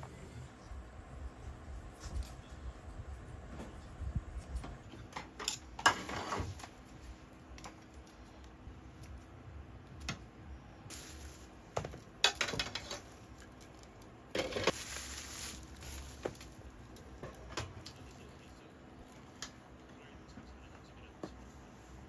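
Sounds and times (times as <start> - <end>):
small objects clicking and clattering: 10.9 - 17.2.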